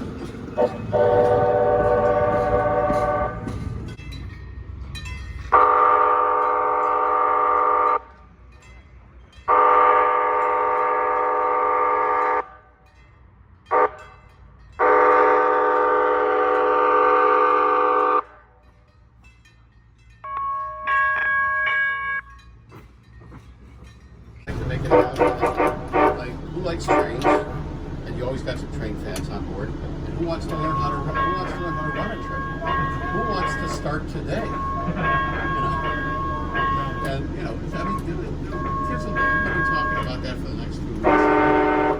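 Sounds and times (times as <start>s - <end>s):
light rail horn chord: 0.0s - 3.9s, 5.5s - 8.3s, 9.5s - 12.8s, 13.7s - 14.2s, 14.8s - 18.6s, 20.3s - 22.3s, 24.5s - 41.9s.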